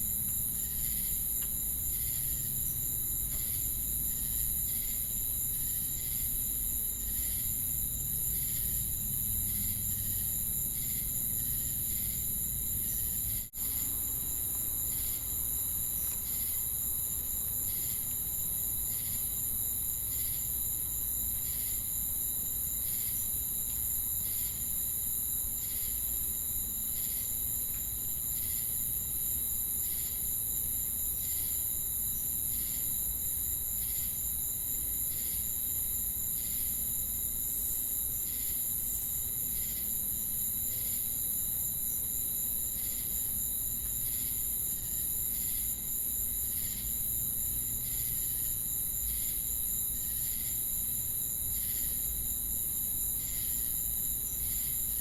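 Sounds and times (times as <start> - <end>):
pulsed insect trill: 28.2 - 55.0.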